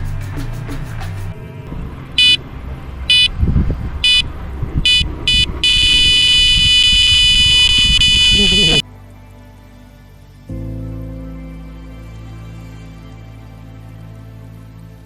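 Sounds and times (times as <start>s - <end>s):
low rumbling noise: 0.0s - 8.8s
bite alarm beeps and tone: 2.2s - 2.4s, 3.1s - 3.3s, 4.0s - 4.3s, 4.9s - 8.8s.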